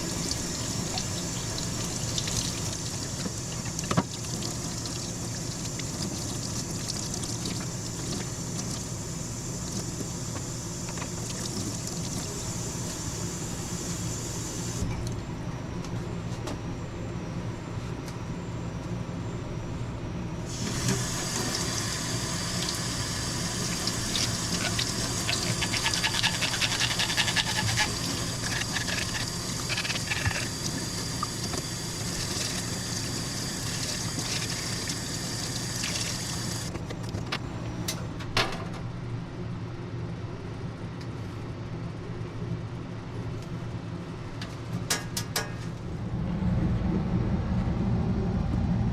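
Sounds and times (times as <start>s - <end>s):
steady low hum: 0.0s - 48.9s
water running and splashing: 0.1s - 8.8s, 20.5s - 36.7s.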